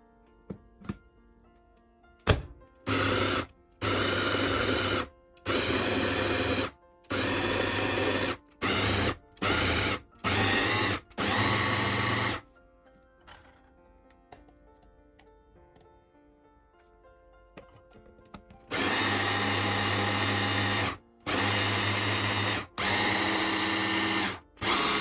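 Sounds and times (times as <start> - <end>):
kitchen appliance motor running: 2.9 - 12.4, 18.7 - 25.0.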